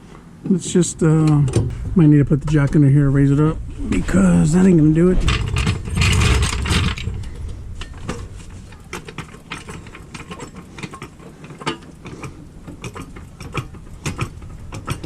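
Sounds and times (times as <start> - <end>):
car jack clicking and clunking: 5.2 - 15.0.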